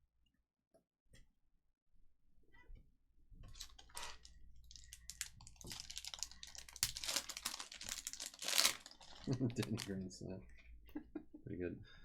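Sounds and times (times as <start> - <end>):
crinkling of card packs: 3.5 - 10.1
sharp crackles: 3.6 - 9.9.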